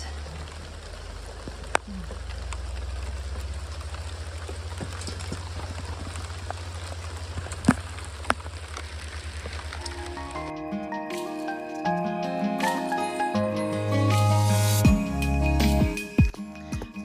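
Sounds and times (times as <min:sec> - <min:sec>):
hailstones ticking on ground: 0:00.0 - 0:10.5.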